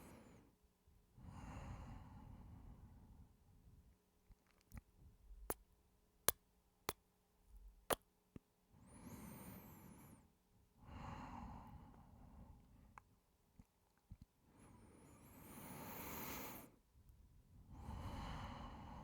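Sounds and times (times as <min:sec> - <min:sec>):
long breathy sighs: 0:14.6 - 0:16.8, 0:17.7 - 0:19.0.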